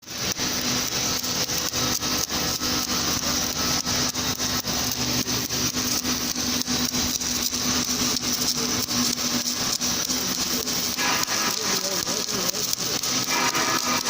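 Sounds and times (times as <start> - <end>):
welding crackles: 0.0 - 14.0
welding machine hum: 0.0 - 14.0.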